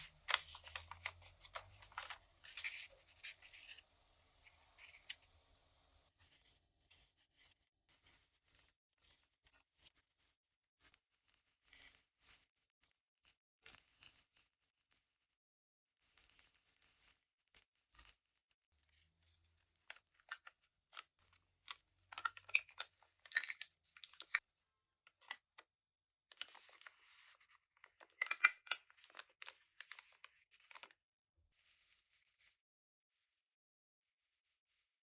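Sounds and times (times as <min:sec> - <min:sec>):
paper crinkling: 0:00.0 - 0:03.8, 0:26.3 - 0:30.9.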